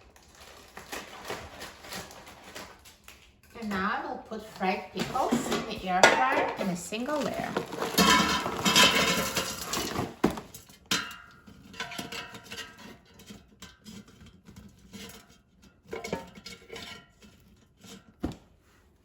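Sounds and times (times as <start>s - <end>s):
frozen food rattling into basket: 0.0s - 10.7s.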